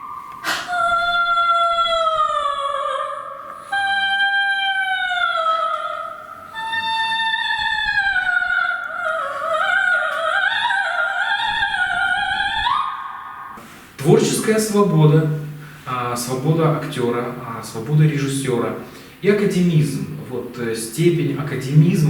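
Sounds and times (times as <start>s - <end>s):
wordless opera-like singing: 0.0s - 14.7s.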